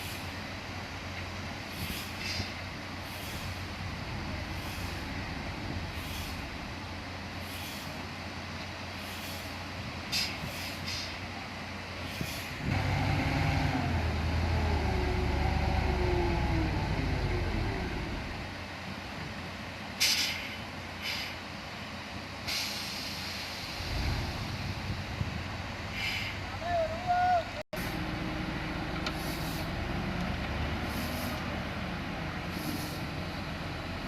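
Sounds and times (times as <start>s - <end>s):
heavy diesel machinery running: 0.0s - 26.9s, 27.8s - 34.0s
short hissing puffs: 1.6s - 3.8s, 4.5s - 5.2s, 5.9s - 6.6s, 7.4s - 8.1s, 8.9s - 11.2s, 12.0s - 12.6s, 20.0s - 21.5s, 22.4s - 24.7s, 29.1s - 29.8s, 30.8s - 31.6s, 32.4s - 33.3s
diesel engine revving: 12.6s - 18.7s, 23.6s - 26.7s, 27.8s - 34.0s.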